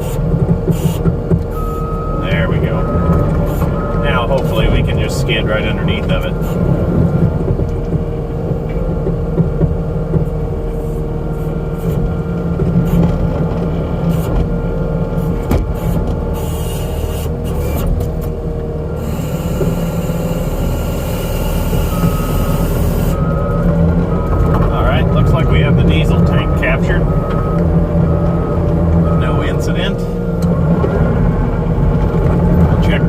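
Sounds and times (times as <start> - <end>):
diesel engine running under load: 0.0 - 33.0
back-up alarm beeping: 0.8 - 6.6, 18.9 - 30.4.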